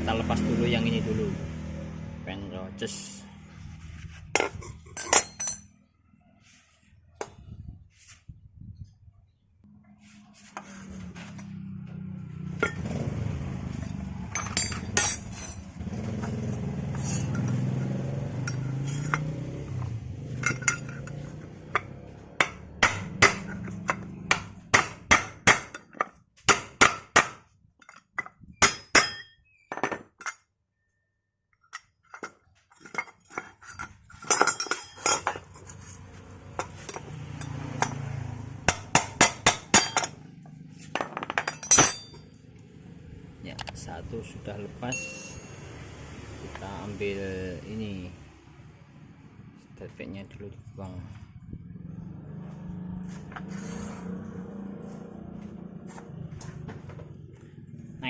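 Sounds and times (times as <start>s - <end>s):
metal tools clinking and tapping: 4.3s - 5.8s, 12.5s - 13.0s, 13.7s - 26.7s, 27.8s - 30.5s, 31.6s - 42.4s, 44.9s - 45.6s
sharp metal taps: 20.4s - 27.4s, 38.7s - 40.3s.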